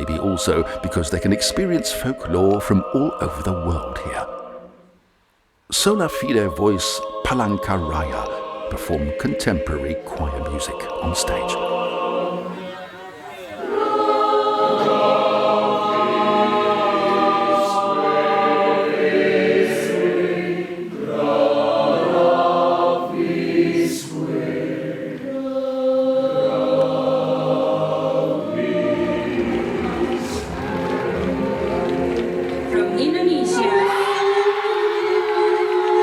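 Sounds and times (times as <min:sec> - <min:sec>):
choir singing: 0:00.0 - 0:05.0, 0:05.8 - 0:36.0.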